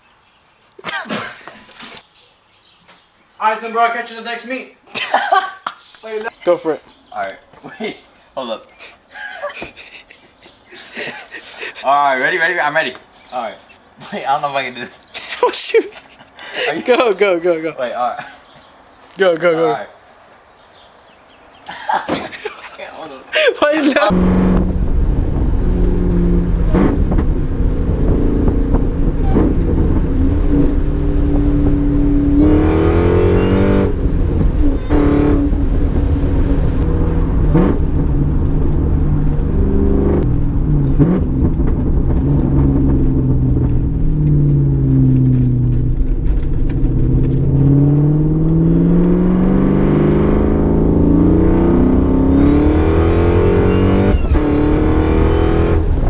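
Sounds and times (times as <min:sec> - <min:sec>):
car engine revving: 0:24.0 - 0:56.0.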